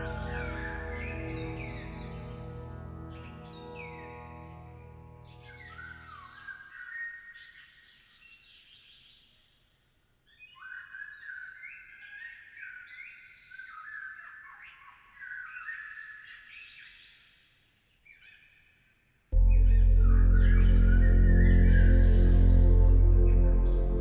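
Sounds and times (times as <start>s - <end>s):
birds chirping: 19.4s - 24.0s.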